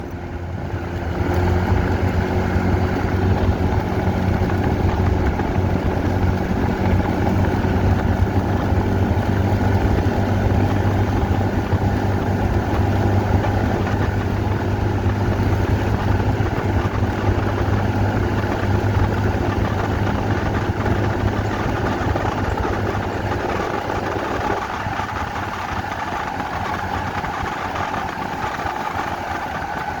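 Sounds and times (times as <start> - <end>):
motor engine humming: 0.0 - 30.0.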